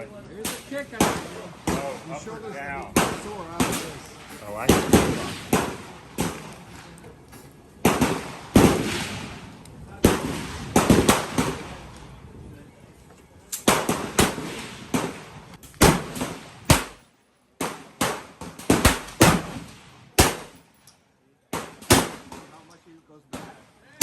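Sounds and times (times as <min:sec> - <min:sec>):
shotgun gunshots: 0:02.9 - 0:04.0, 0:04.6 - 0:06.6, 0:07.8 - 0:09.4, 0:10.0 - 0:11.7, 0:13.6 - 0:17.0, 0:17.6 - 0:20.6, 0:21.6 - 0:22.6.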